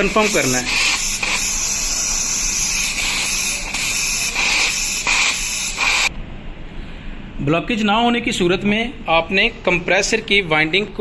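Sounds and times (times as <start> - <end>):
pressurised gas hissing: 0.0 - 6.1.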